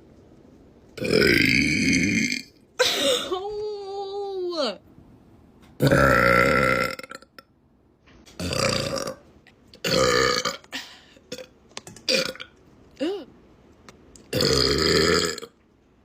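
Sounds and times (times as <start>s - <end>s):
woman burping: 8.4s - 9.2s, 9.8s - 11.5s, 12.1s - 13.3s, 14.3s - 15.5s.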